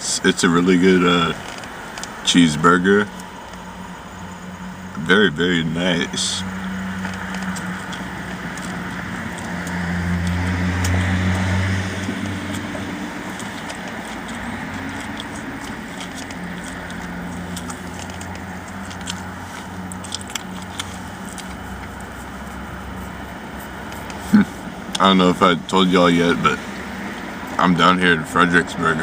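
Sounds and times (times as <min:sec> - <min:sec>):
car cabin hum: 0:00.0 - 0:29.0
light clicks and crackles: 0:07.0 - 0:24.3.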